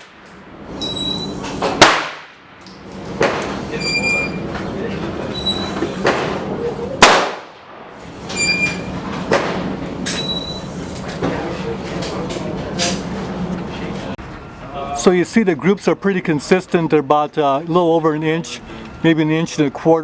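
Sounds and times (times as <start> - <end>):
rifle shots: 1.7 - 2.4, 7.0 - 7.7.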